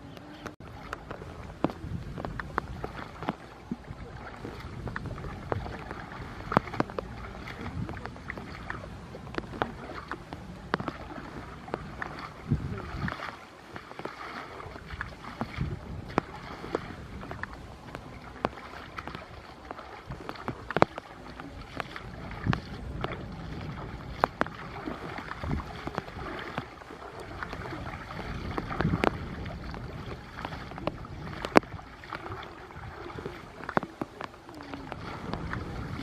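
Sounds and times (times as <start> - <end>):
water noise: 0.0 - 36.0
irregular knocks and clicks: 7.8 - 12.4.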